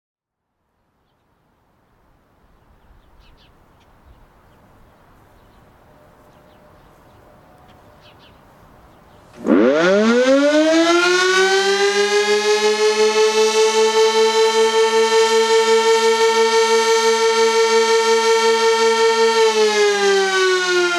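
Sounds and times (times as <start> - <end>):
warning siren winding up: 9.4 - 20.9.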